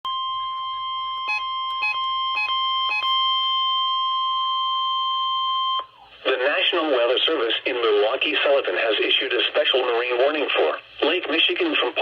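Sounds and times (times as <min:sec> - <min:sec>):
steady weather radio alarm tone: 0:00.1 - 0:07.4.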